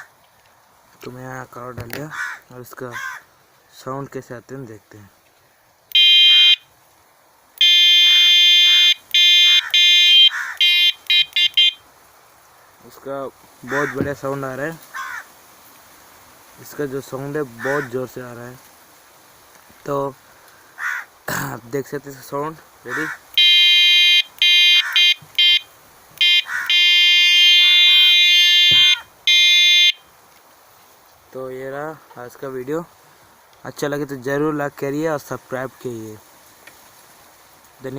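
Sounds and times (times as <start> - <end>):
bicycle air horn blasts: 5.9 - 6.7, 7.6 - 11.8, 23.3 - 30.0.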